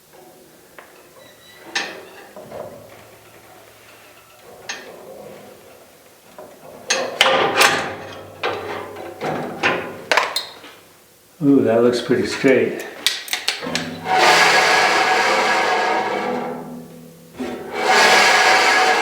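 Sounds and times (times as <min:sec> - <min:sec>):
metal clattering and scraping: 0:13.6 - 0:19.0.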